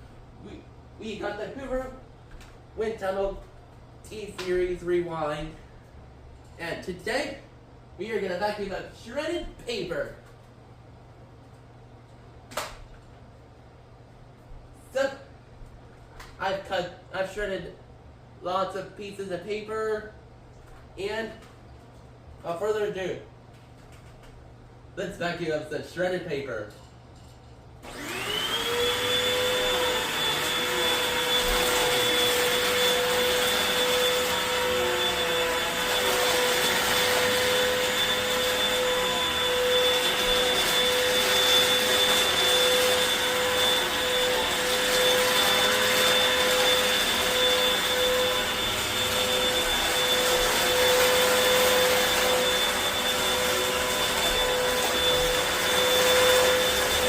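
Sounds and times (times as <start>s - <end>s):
vacuum cleaner motor whine: 27.8s - 57.0s
vacuuming up shredded paper: 27.8s - 57.0s.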